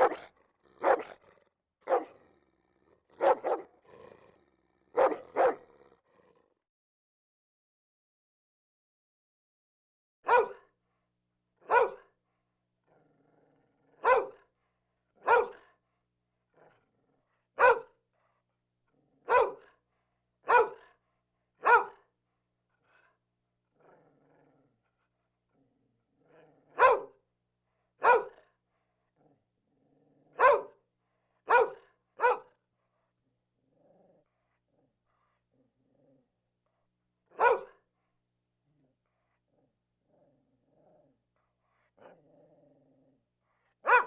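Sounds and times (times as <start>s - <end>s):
dog barking: 0.0s - 2.2s, 3.1s - 3.8s, 4.9s - 5.8s, 10.2s - 10.8s, 11.6s - 12.2s, 14.0s - 14.5s, 15.2s - 15.8s, 17.6s - 18.0s, 19.2s - 19.8s, 20.4s - 21.0s, 21.6s - 22.1s, 26.7s - 27.2s, 28.0s - 28.5s, 30.3s - 30.8s, 31.4s - 32.6s, 37.3s - 37.9s, 43.8s - 44.0s.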